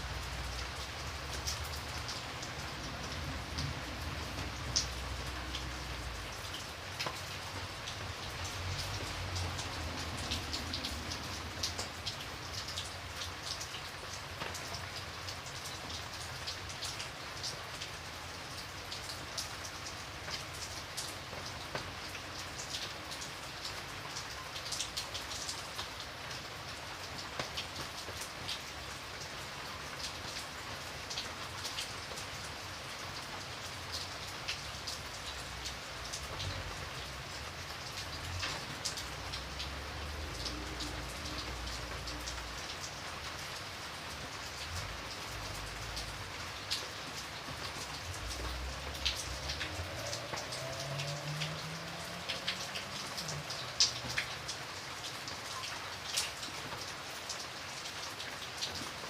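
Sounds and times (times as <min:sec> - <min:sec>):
rain hissing: 0:00.0 - 0:16.4, 0:26.2 - 0:55.4
raindrops pattering on a surface: 0:00.0 - 0:59.0.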